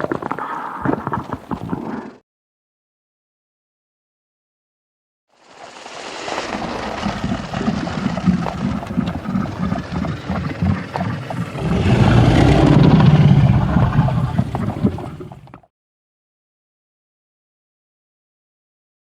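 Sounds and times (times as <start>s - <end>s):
dragon rumbling growl: 10.6s - 15.5s.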